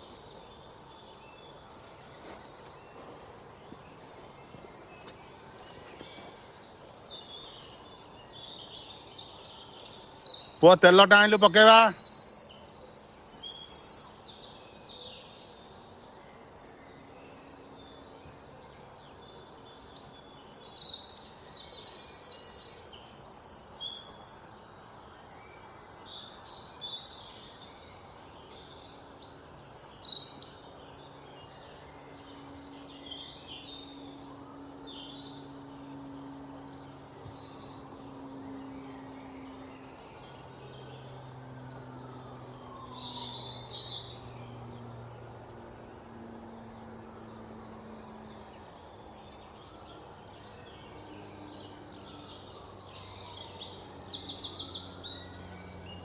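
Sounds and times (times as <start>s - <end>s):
birds chirping: 0.0s - 56.0s.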